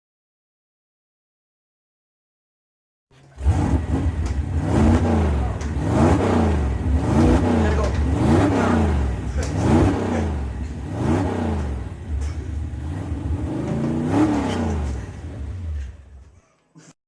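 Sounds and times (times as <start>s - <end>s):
car engine revving: 3.2s - 16.3s
steady low hum: 3.8s - 16.3s.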